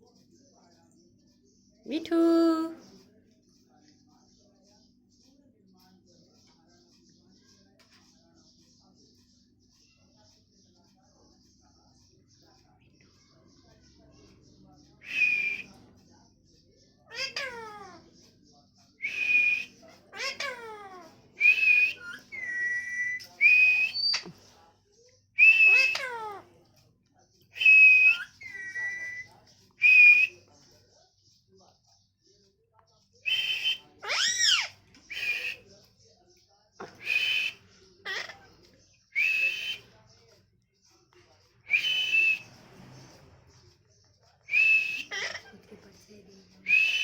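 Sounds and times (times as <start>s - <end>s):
parrot whistling: 19.0s - 20.8s, 21.4s - 24.3s, 25.4s - 26.3s, 27.6s - 30.4s, 33.3s - 35.6s, 36.9s - 38.4s, 39.2s - 39.9s, 41.7s - 42.6s, 44.5s - 45.5s, 46.6s - 47.0s.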